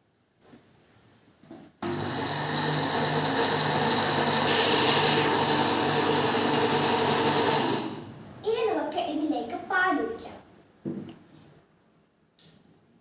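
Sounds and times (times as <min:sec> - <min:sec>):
electric kitchen mixer motor: 0:01.8 - 0:08.2.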